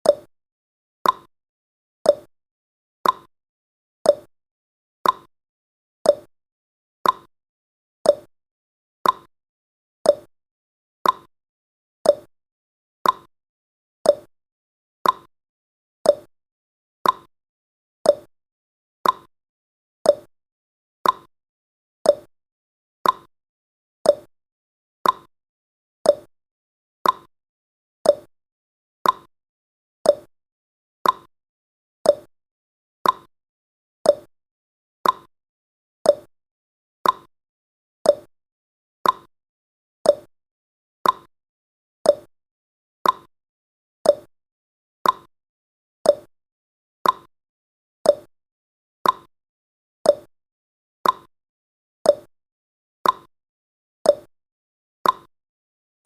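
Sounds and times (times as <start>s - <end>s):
clock ticking: 33.0s - 33.3s, 35.0s - 35.3s, 39.0s - 39.3s, 41.0s - 41.3s, 45.0s - 45.3s, 47.0s - 47.3s, 55.0s - 55.3s.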